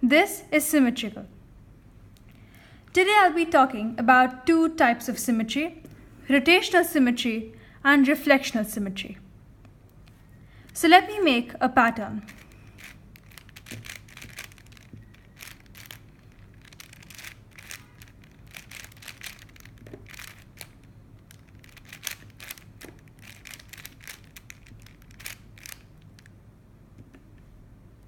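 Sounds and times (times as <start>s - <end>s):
puzzle cube clicking: 12.2s - 26.3s.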